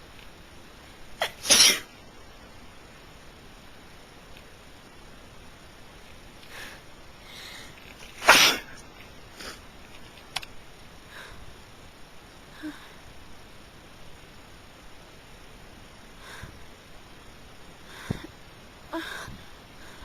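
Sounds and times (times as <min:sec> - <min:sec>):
person sneezing: 0:01.2 - 0:01.9, 0:08.2 - 0:08.8
breaths and sniffs: 0:06.4 - 0:09.7.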